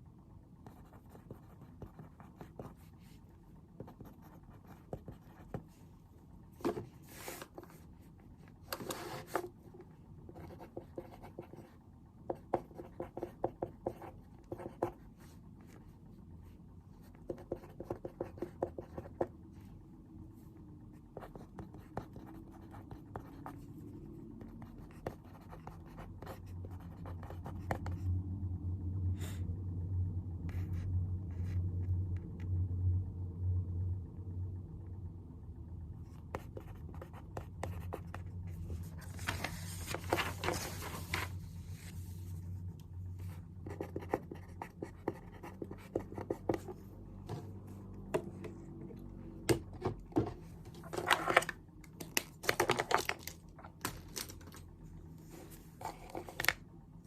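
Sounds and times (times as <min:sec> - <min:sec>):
pen scratching on paper: 0:00.6 - 0:05.7, 0:10.3 - 0:15.8, 0:17.1 - 0:19.3, 0:21.2 - 0:23.6, 0:24.6 - 0:28.0, 0:36.3 - 0:38.6, 0:43.2 - 0:46.8.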